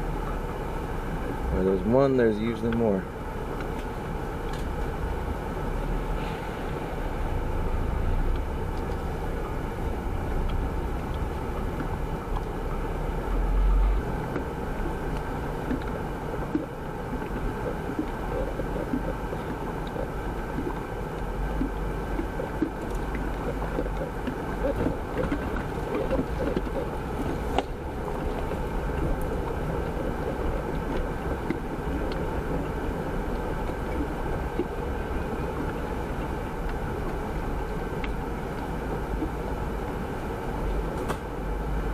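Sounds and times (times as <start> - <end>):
car engine running: 0.0 - 41.9.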